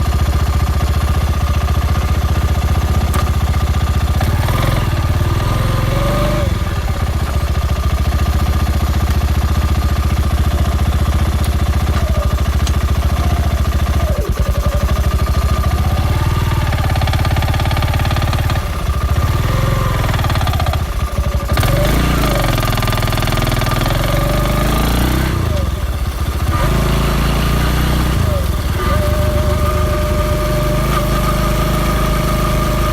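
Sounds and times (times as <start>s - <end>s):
model engine running with high whine: 0.0s - 32.9s.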